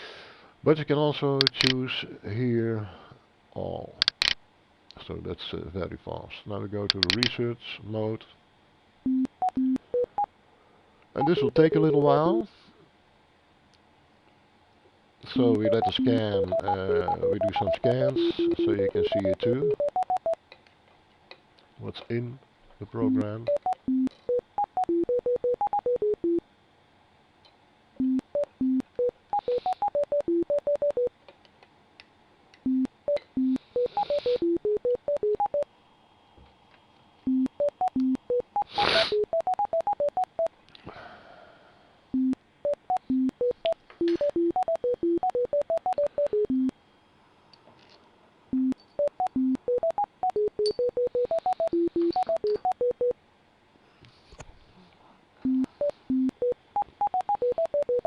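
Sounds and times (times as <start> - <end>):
electronic beeps changing pitch: 15.5 - 20.4.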